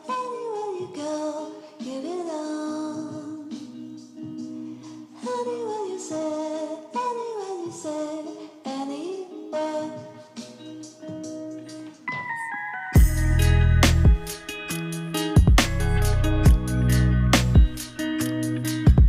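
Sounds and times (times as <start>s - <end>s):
woman singing: 0.0s - 12.6s
instrumental accompaniment: 9.5s - 19.0s.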